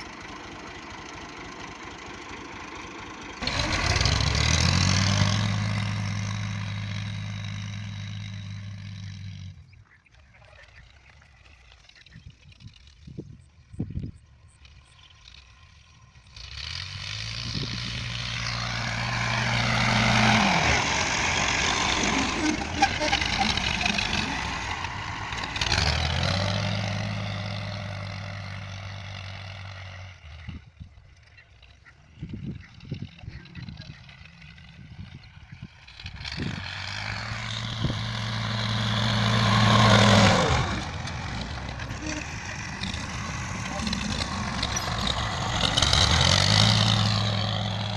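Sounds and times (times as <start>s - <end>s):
motor engine humming: 0.0s - 9.5s, 17.2s - 29.7s, 36.4s - 47.9s.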